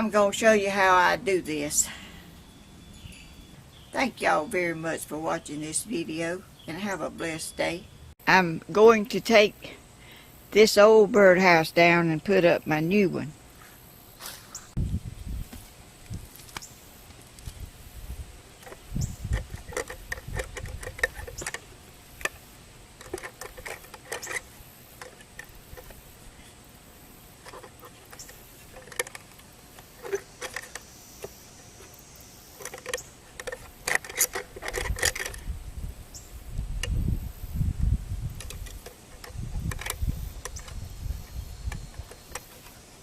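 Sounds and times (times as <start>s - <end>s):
birdhouse rattles and knocks: 18.6s - 22.4s, 27.4s - 31.9s, 32.6s - 35.5s, 38.4s - 40.8s.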